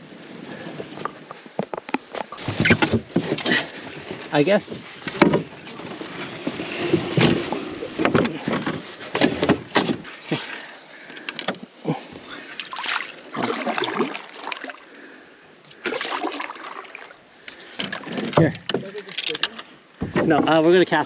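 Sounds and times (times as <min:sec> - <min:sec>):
paddle splashes: 0:12.0 - 0:15.0, 0:15.7 - 0:18.2
hollow knocks against hull: 0:20.0 - 0:20.6.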